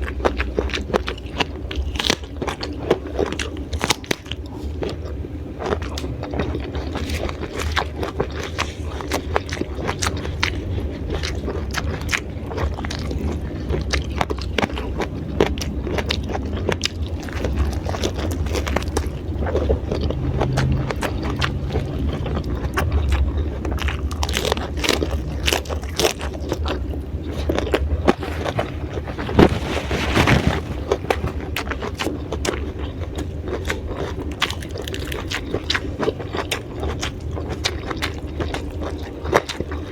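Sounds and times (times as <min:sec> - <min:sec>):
steady low hum: 0:00.0 - 0:39.2
crunching raw vegetables: 0:27.3 - 0:39.9.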